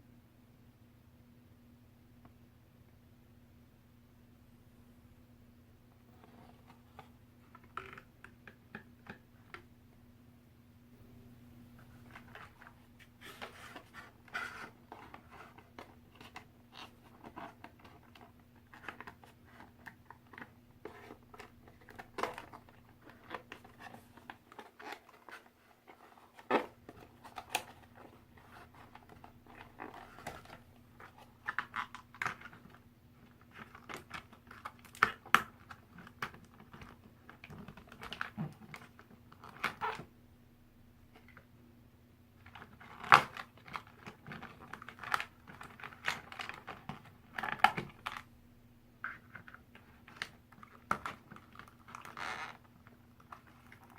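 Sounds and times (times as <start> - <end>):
packaging crinkling and rustling: 11.8 - 40.1, 42.4 - 48.3, 49.0 - 53.9.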